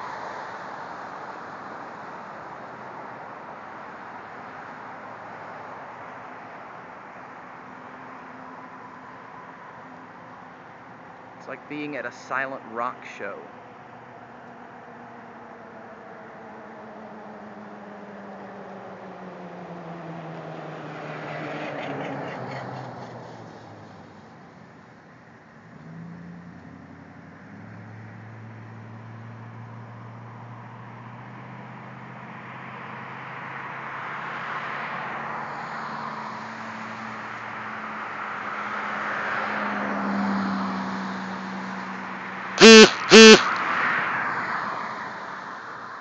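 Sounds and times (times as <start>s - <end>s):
vehicle noise: 0.0s - 46.0s
car horn beeps: 42.6s - 43.6s.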